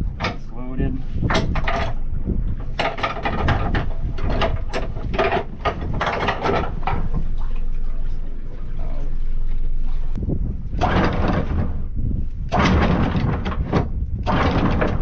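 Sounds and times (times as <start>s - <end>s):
low rumble: 0.0s - 15.0s
anchor chain clattering: 1.2s - 7.4s.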